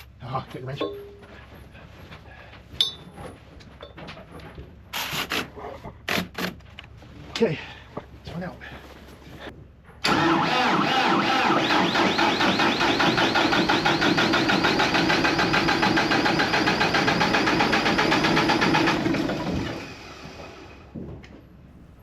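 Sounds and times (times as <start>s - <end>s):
diesel tractor engine cranking: 10.0s - 20.8s.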